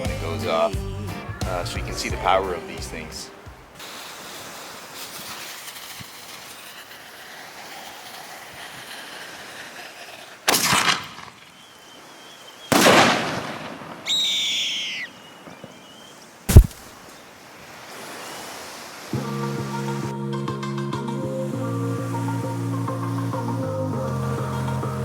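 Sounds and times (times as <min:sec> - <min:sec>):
steady background hiss: 0:00.0 - 0:20.1
fireworks hissing bursts: 0:02.2 - 0:11.4, 0:16.5 - 0:17.0
shrill firework whistle: 0:14.1 - 0:16.7
sharp bang: 0:16.5 - 0:16.9.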